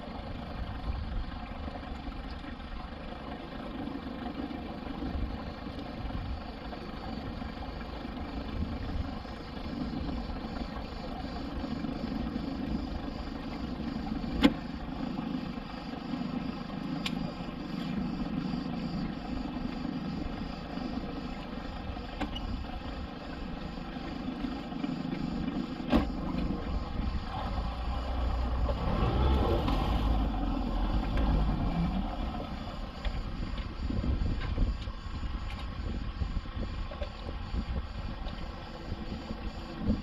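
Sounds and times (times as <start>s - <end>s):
boat engine rumbling: 0.0s - 40.0s.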